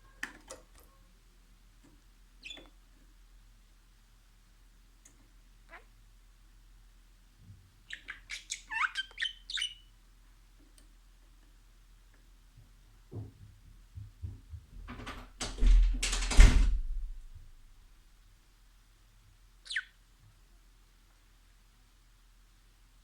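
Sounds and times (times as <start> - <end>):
budgerigar chirping: 7.9 - 9.8, 19.6 - 19.9
loud rustling and bumping: 14.2 - 17.7.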